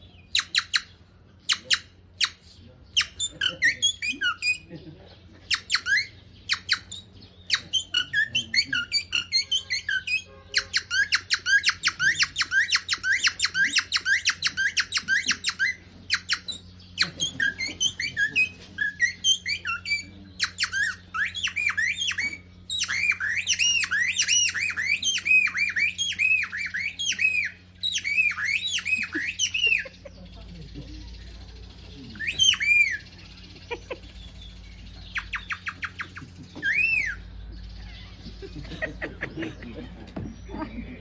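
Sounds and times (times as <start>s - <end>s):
person imitating bird calls: 7.5s - 30.3s, 35.2s - 41.0s.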